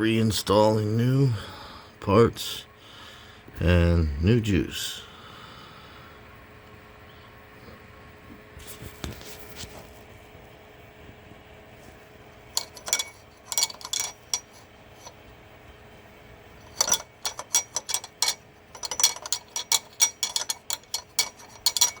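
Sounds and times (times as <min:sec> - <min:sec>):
hand tools clinking on metal: 0:12.6 - 0:15.2, 0:16.6 - 0:22.0.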